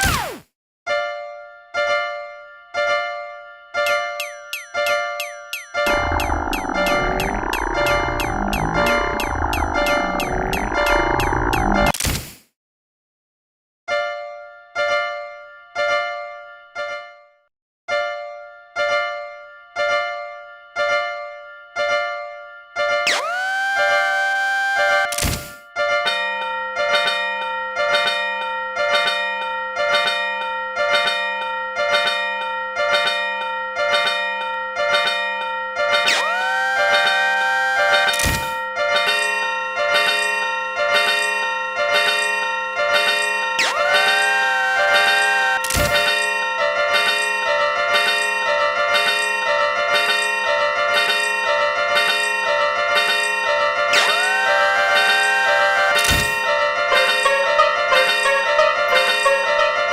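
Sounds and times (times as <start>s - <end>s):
level crossing bell ringing: 3.9s - 11.9s, 38.9s - 59.9s.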